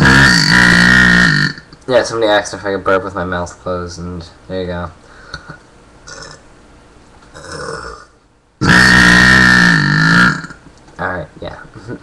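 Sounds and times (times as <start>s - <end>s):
person burping loudly: 0.0s - 1.7s, 6.1s - 6.4s, 7.3s - 10.6s.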